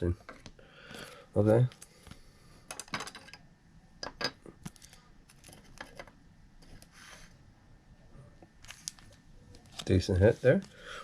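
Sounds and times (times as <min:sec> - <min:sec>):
cards clicking and rustling: 0:04.6 - 0:06.1.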